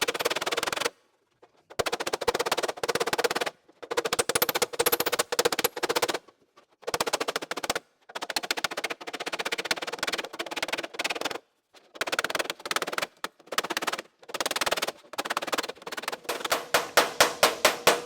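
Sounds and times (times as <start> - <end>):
hammer taps on steel panel: 16.2 - 18.0.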